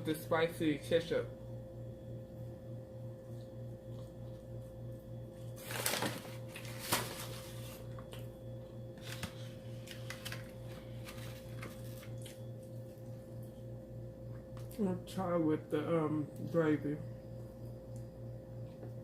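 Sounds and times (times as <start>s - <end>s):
steady electrical hum: 0.0s - 19.0s
chewing food: 3.0s - 5.6s, 9.9s - 13.7s.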